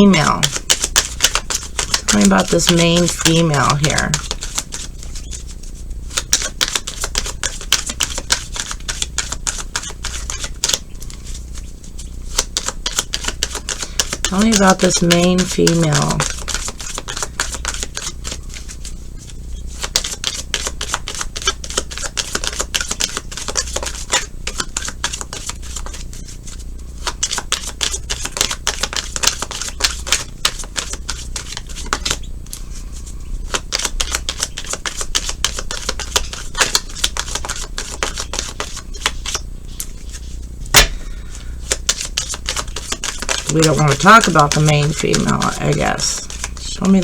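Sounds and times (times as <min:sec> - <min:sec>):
cards being shuffled: 0:00.0 - 0:47.0.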